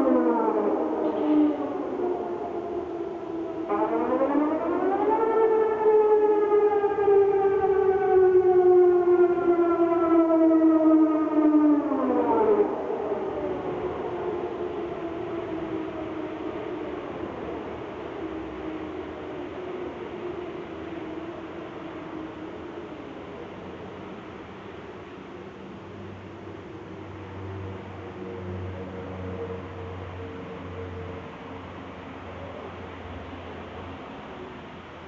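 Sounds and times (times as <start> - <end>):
warning siren rising and falling: 0.0 - 18.8
distant sirens: 0.0 - 35.0.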